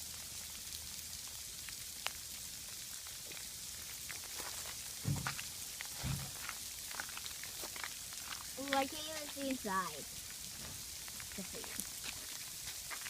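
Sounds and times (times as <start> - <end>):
ice pellets pattering: 1.4 - 13.0
dull low thumps: 5.0 - 5.4.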